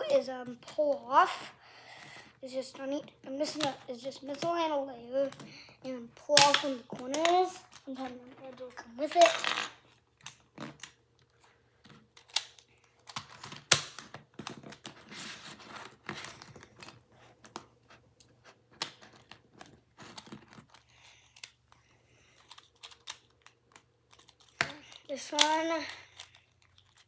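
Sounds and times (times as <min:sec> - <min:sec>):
plastic cube pieces clicking: 0:06.4 - 0:08.1, 0:18.7 - 0:27.0.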